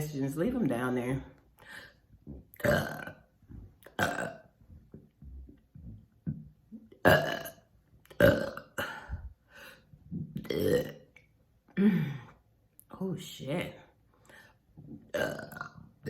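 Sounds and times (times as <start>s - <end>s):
person burping loudly: 2.5s - 3.3s, 3.9s - 4.6s, 6.9s - 9.3s, 10.2s - 11.1s, 15.0s - 15.9s.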